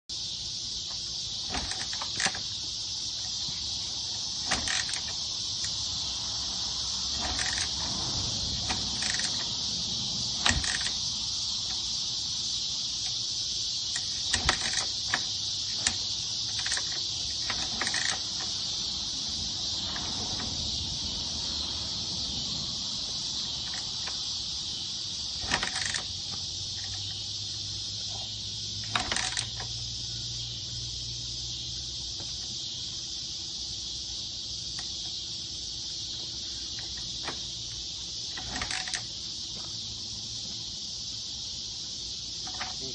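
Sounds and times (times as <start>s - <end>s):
insects chirring: 0.1s - 42.9s
sharp clicks and knocks: 0.9s - 2.5s, 4.4s - 5.8s, 8.6s - 9.5s, 10.4s - 11.8s, 13.9s - 18.6s, 25.4s - 27.2s, 28.8s - 29.8s, 38.3s - 39.7s, 42.4s - 42.9s.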